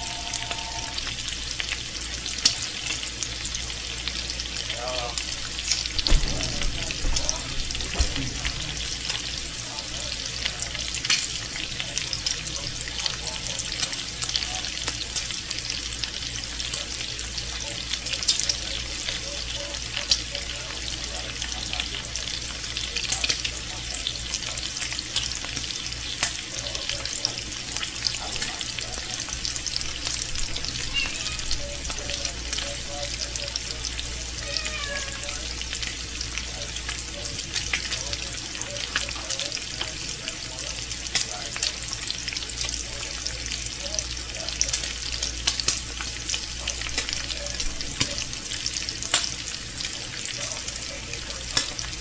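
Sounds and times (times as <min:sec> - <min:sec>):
bacon sizzling in a pan: 0:00.0 - 0:52.0
fat popping and crackling: 0:05.6 - 0:09.5.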